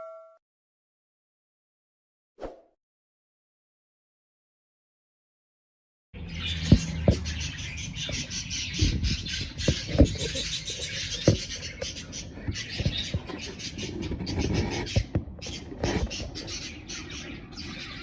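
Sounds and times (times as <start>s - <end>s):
budgerigars chattering: 6.2s - 18.0s.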